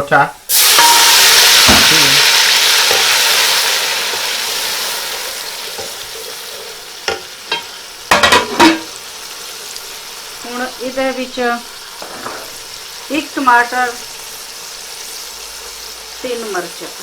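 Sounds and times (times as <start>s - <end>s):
onions sizzling in hot oil: 0.0s - 17.0s
spoon knocking against pan: 0.8s - 2.1s, 7.0s - 8.9s.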